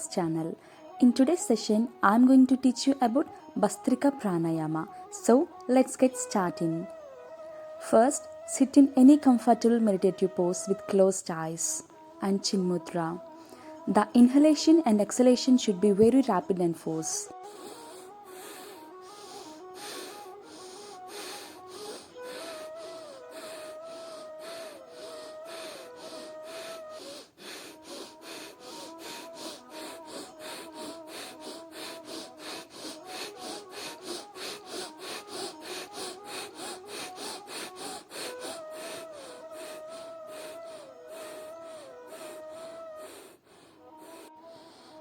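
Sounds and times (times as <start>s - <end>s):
soft background music: 0.0s - 45.0s
rapid forceful nose breaths: 17.4s - 45.0s.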